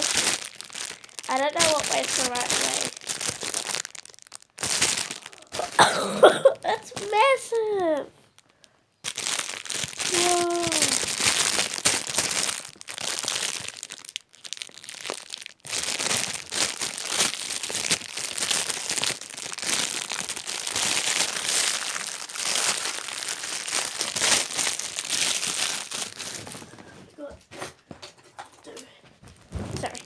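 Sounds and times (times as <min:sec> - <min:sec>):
plastic packaging crinkling: 0:00.0 - 0:27.1, 0:29.2 - 0:30.0.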